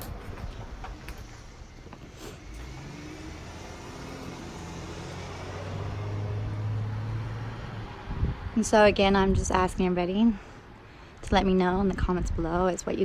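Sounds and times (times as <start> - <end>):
car engine hum driving past: 2.4 - 8.5.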